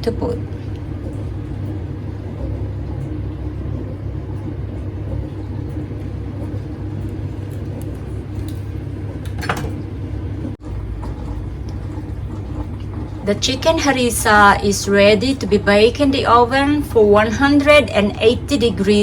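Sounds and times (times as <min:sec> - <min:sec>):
low rumble with hum: 0:00.0 - 0:19.0.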